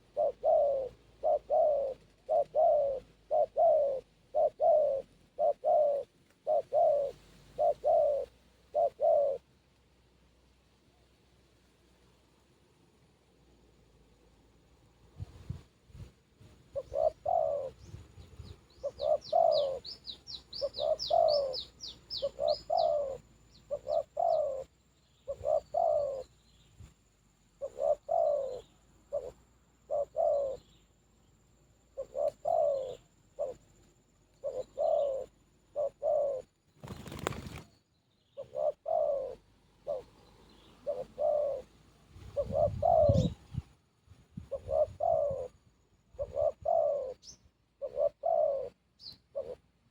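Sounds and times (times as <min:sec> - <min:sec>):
dove cooing: 0:00.0 - 0:09.5, 0:15.2 - 0:26.4, 0:27.6 - 0:30.8, 0:31.9 - 0:37.7, 0:38.3 - 0:49.9
small bird chirping: 0:16.7 - 0:49.9.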